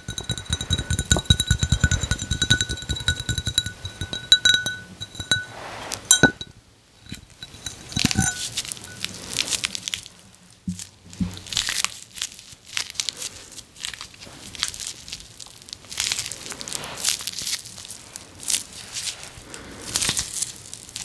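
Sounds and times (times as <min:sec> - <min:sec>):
steady ringing tone: 0:00.0 - 0:09.1
handling sounds: 0:00.0 - 0:10.1.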